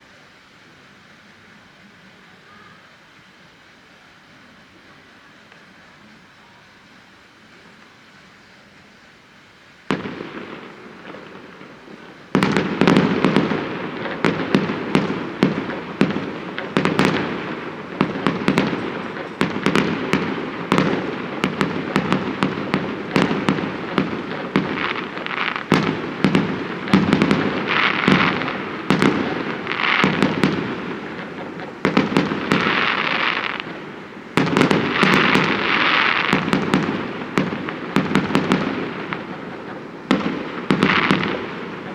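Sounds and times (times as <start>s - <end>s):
fireworks bangs and crackling: 9.8s - 41.9s.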